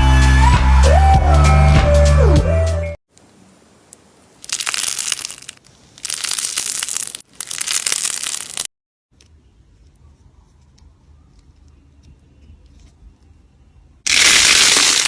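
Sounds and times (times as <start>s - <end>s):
slime crackling and crunching: 4.4s - 8.7s, 14.1s - 15.0s.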